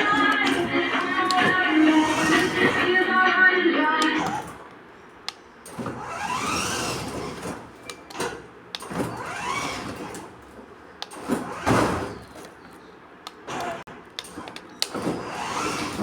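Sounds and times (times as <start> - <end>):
toy car motor whining: 0.1 - 3.0, 5.9 - 7.6, 9.0 - 10.2, 15.1 - 16.0.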